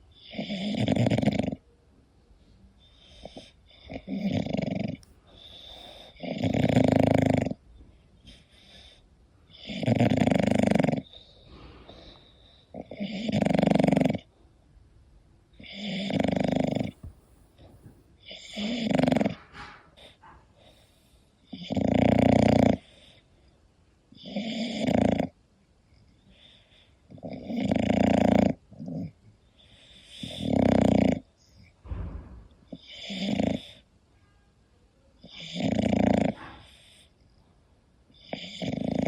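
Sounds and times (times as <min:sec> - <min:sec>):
dog snoring: 0:00.1 - 0:01.6, 0:02.8 - 0:07.6, 0:08.2 - 0:14.3, 0:15.6 - 0:23.2, 0:24.1 - 0:25.4, 0:26.3 - 0:31.7, 0:32.7 - 0:33.8, 0:35.2 - 0:37.1, 0:38.1 - 0:39.0
dog breathing quietly: 0:02.3 - 0:13.9, 0:15.6 - 0:21.9, 0:28.9 - 0:33.9, 0:35.3 - 0:37.3.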